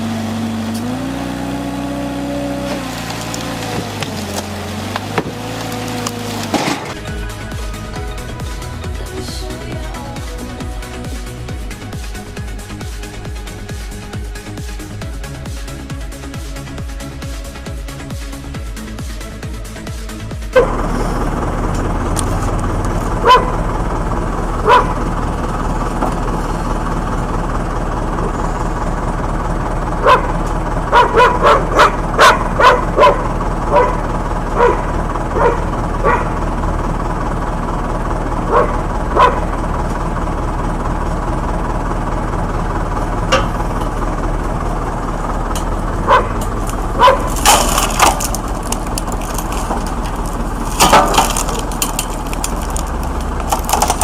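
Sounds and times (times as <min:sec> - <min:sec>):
low machine hum: 0:00.0 - 0:54.0
dog barking: 0:20.5 - 0:20.8, 0:23.2 - 0:23.6, 0:24.6 - 0:25.0, 0:30.0 - 0:34.0, 0:34.6 - 0:36.4, 0:38.5 - 0:39.5, 0:46.0 - 0:46.4, 0:47.0 - 0:47.4.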